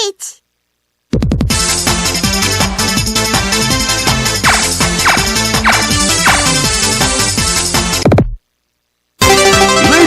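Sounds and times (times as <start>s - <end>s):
up-tempo electronic music: 4.2s - 7.5s.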